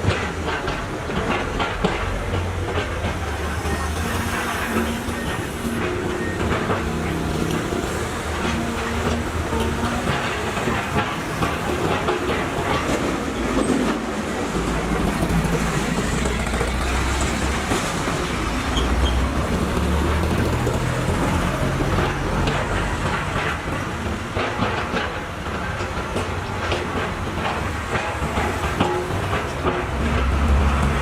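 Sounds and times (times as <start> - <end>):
excavator diesel engine drone: 0.0 - 13.3
clanking and rattling: 0.0 - 31.0.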